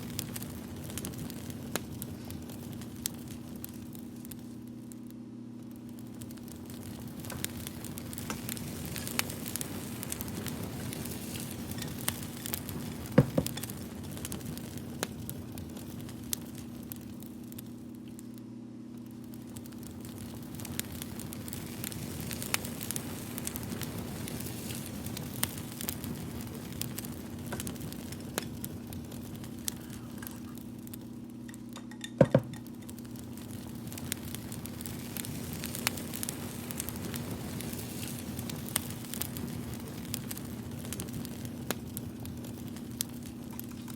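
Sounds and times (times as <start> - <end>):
steady low hum: 0.0 - 43.9
wood fire crackling: 0.0 - 43.9
low hum: 1.3 - 23.2.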